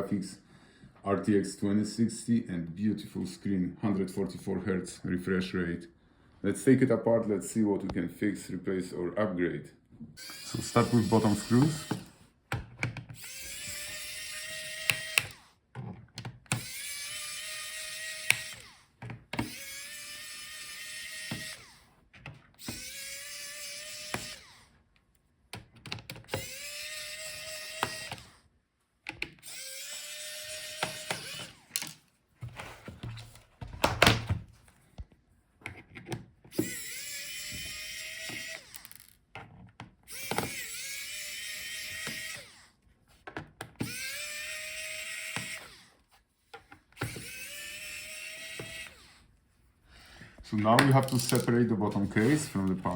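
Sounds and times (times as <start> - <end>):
electric screwdriver whine: 10.2 - 12.2, 13.1 - 15.6, 16.5 - 21.9, 22.6 - 24.7, 26.2 - 28.4, 29.4 - 31.9, 36.5 - 39.2, 40.1 - 42.7, 43.8 - 46.0, 47.0 - 49.3.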